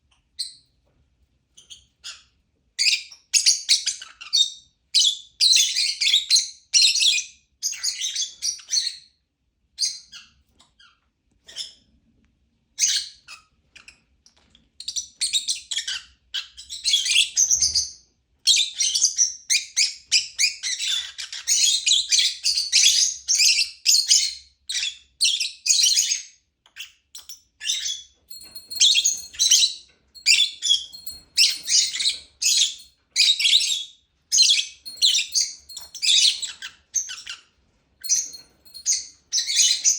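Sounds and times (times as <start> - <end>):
lovebird chirping: 26.8 - 39.9.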